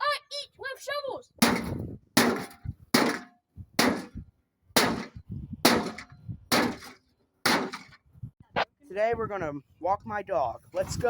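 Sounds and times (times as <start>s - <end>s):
heavy blows on metal casing: 1.4s - 8.0s.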